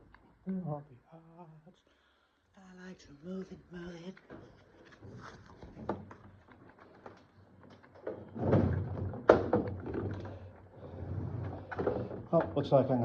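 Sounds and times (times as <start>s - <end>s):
washing machine scraping on floor: 10.8s - 12.1s.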